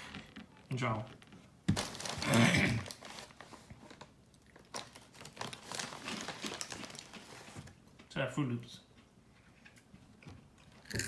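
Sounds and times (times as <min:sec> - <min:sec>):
crinkling and crunching: 0:00.4 - 0:07.7
rustling: 0:01.7 - 0:04.1, 0:04.7 - 0:07.7.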